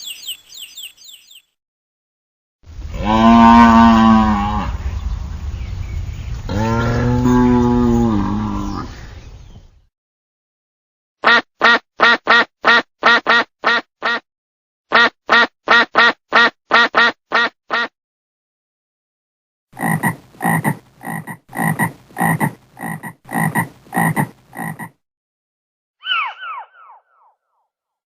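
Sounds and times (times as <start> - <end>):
frog croaking: 19.8 - 25.0.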